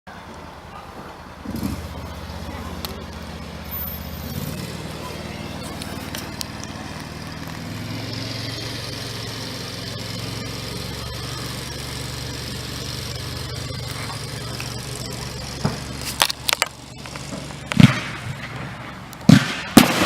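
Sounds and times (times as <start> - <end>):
low engine hum: 0.2 - 19.3
sharp bang: 15.6 - 20.0.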